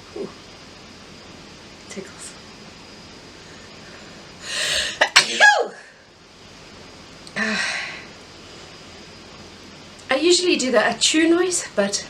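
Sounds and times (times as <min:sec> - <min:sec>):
breathy vocal exhale: 0:03.4 - 0:05.0
woman sneezing: 0:04.8 - 0:05.9.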